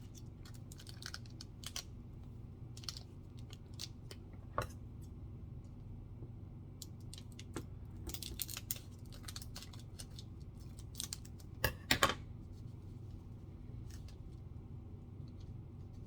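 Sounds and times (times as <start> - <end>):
foil wrapper crinkling and tearing: 0.0 - 1.9, 2.7 - 4.0, 7.0 - 11.6.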